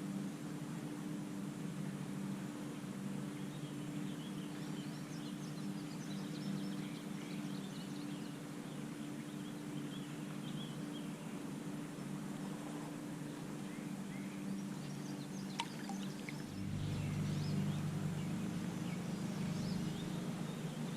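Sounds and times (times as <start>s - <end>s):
steady low hum: 0.0s - 20.9s
small birds chirping: 3.3s - 11.4s, 13.2s - 20.9s.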